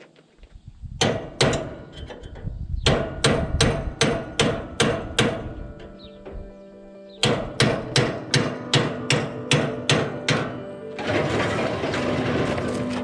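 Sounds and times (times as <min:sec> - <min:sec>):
hammer blows on metal: 0:02.8 - 0:06.2, 0:07.2 - 0:10.7.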